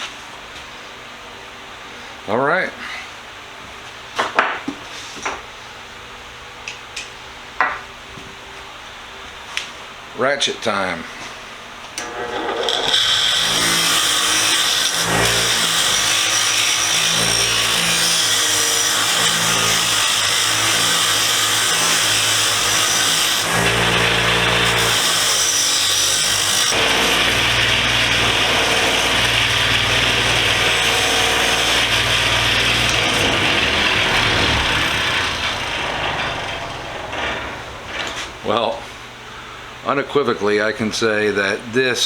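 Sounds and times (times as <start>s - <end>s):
bench grinder motor hum: 12.0s - 38.5s
wire wheel scratching metal: 12.0s - 39.1s.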